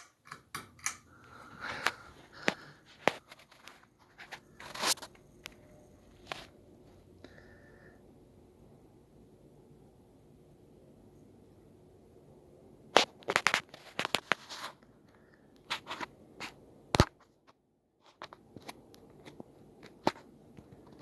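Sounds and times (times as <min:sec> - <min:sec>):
sharp clicks and crackles: 0:00.0 - 0:03.8
ceiling fan humming: 0:00.0 - 0:13.0.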